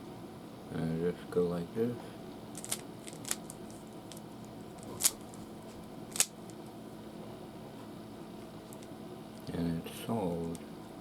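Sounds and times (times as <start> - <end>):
puzzle cube plastic clicks: 2.6 - 4.2, 6.1 - 6.3.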